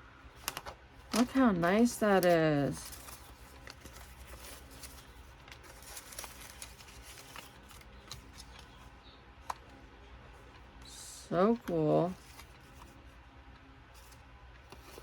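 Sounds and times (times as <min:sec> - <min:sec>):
paper rustling and clicking: 0:00.4 - 0:09.8, 0:11.4 - 0:13.0, 0:14.0 - 0:15.0.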